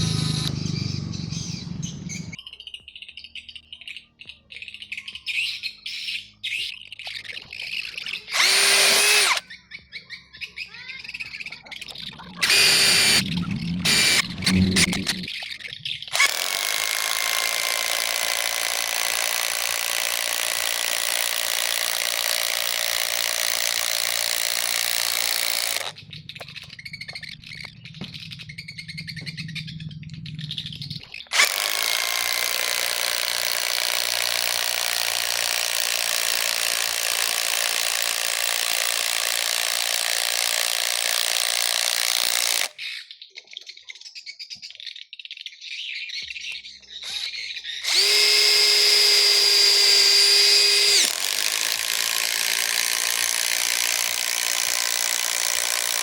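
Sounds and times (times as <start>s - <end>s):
impact driver running: 0.0s - 2.4s, 8.3s - 9.4s, 12.4s - 15.3s, 16.1s - 26.0s, 31.3s - 42.7s, 47.8s - 56.0s
low hum: 12.0s - 15.3s, 25.8s - 32.3s.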